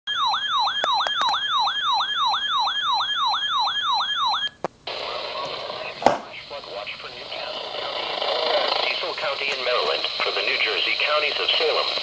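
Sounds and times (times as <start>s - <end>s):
electronic siren wailing: 0.1s - 4.6s
steady hiss: 4.9s - 12.0s.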